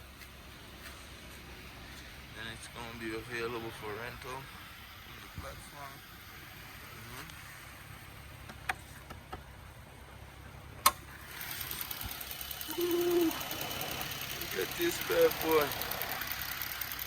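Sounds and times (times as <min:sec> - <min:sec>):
engine idling with fast clatter: 0:00.0 - 0:17.0.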